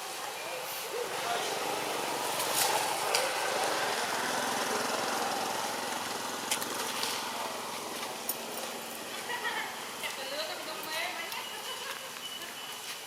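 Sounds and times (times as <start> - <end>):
small engine running: 1.4 - 9.9.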